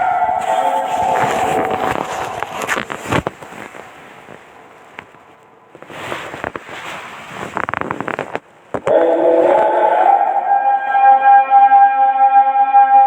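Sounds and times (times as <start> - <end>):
person chanting recitation: 0.0 - 3.0
crackly hiss of old recording: 0.0 - 11.2.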